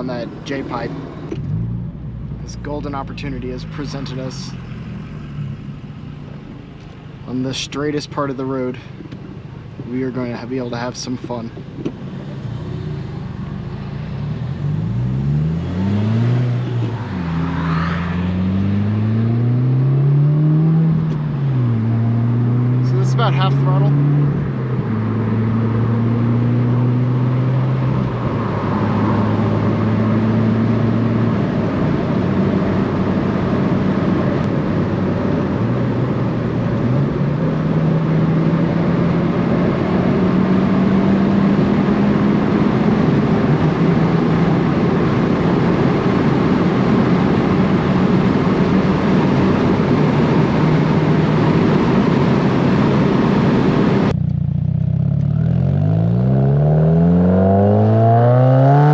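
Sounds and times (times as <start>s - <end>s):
car engine accelerating through gears: 11.8s - 58.9s.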